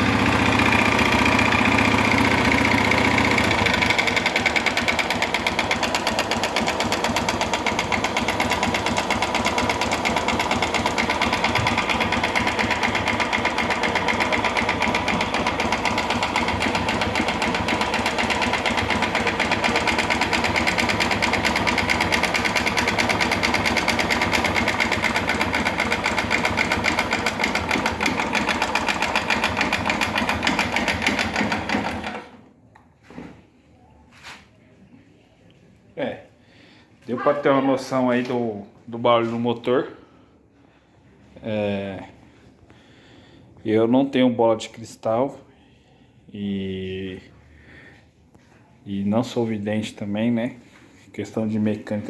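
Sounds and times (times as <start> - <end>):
motorcycle engine clattering: 0.0 - 32.2.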